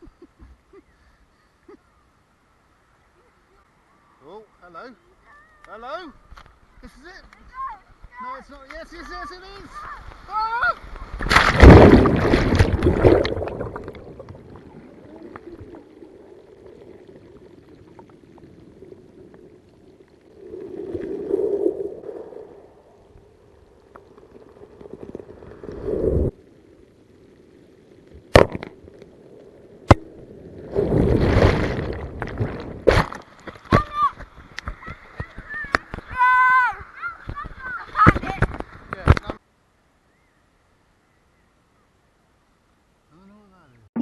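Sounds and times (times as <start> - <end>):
surf washing over kayak: 8.8 - 18.0, 29.8 - 39.4
water swirling and gurgling: 9.7 - 38.9.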